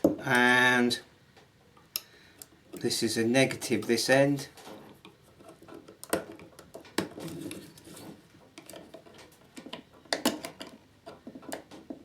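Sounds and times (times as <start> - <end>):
insulation peeling clicks and rustles: 3.7 - 12.0.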